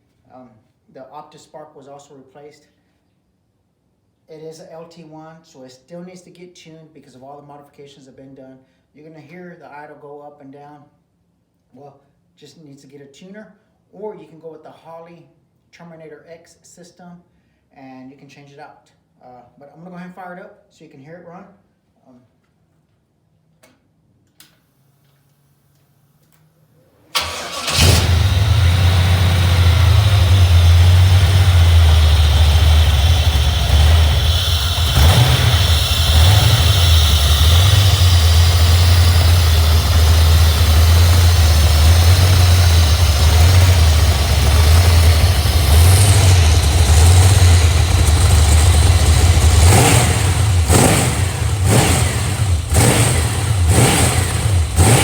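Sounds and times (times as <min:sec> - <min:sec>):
car engine idling unevenly: 0:27.2 - 0:55.0
engine revs blipped: 0:27.2 - 0:55.0
starter motor cranking: 0:27.2 - 0:55.0.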